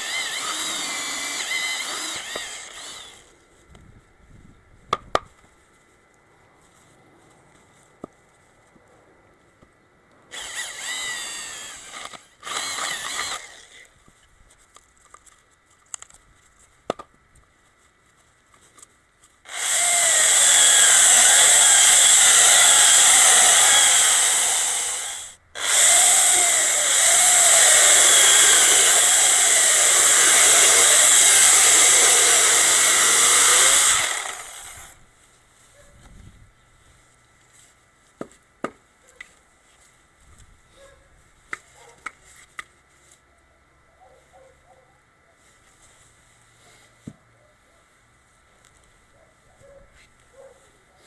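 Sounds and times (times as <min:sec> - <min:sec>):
electric drill boring into wood: 0:00.0 - 0:03.3, 0:10.3 - 0:13.9, 0:19.5 - 0:35.0.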